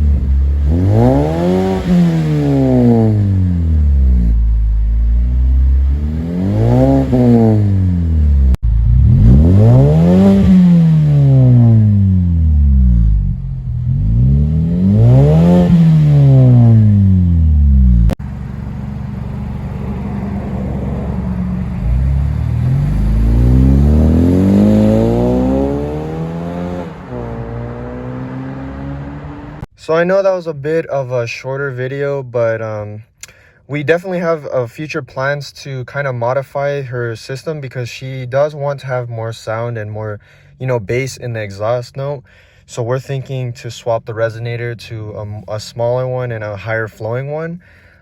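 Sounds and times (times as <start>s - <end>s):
car engine revving: 0.0s - 29.7s.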